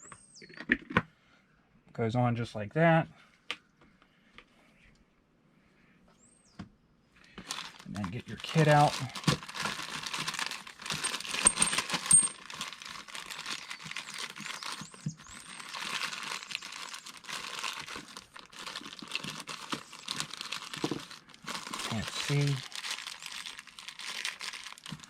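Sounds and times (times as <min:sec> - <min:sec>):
plastic packaging crinkling: 0:07.4 - 0:25.0.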